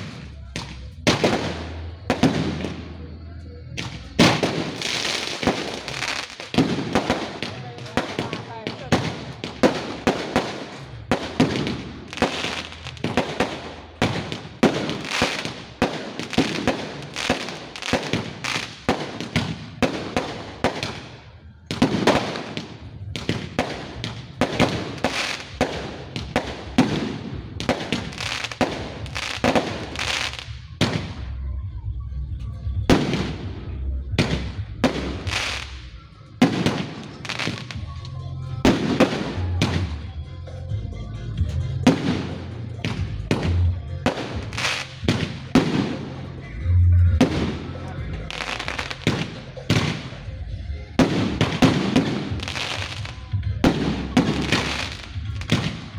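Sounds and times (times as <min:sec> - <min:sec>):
fireworks cracks and bangs: 0:00.0 - 0:31.4, 0:32.7 - 0:40.7, 0:41.3 - 0:55.9
low rumble: 0:37.8 - 0:51.0.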